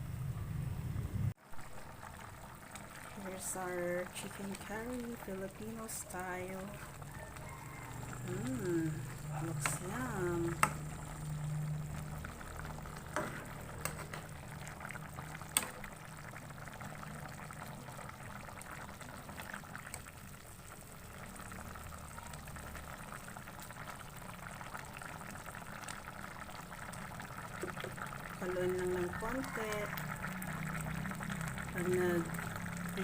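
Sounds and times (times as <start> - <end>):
low hum: 0.0 - 3.4, 4.0 - 17.6
curry bubbling in a pot: 1.4 - 33.0.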